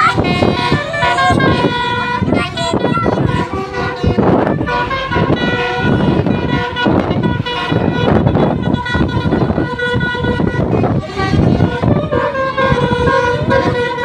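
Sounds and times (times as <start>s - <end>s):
musical air horn tune: 0.0s - 14.0s
road and engine noise: 0.0s - 14.0s.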